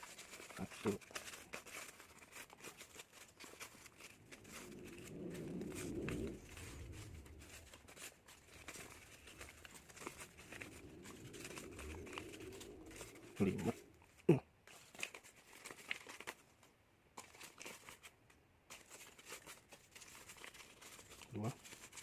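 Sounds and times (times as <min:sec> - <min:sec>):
paper banknotes rustling and clicking: 0:00.0 - 0:13.8, 0:14.7 - 0:22.0
low hum: 0:03.2 - 0:14.3.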